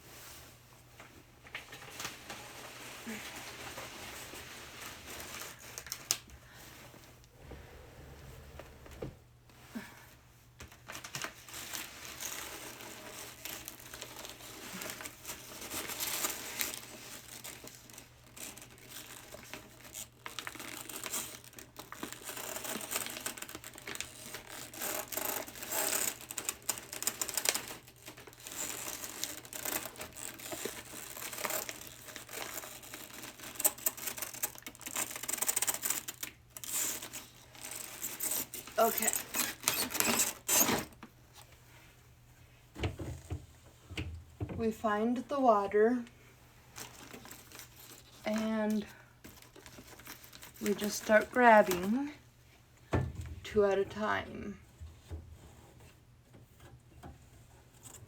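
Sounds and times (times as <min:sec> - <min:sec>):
plastic packaging crinkling: 0:10.7 - 0:41.1, 0:46.7 - 0:52.2.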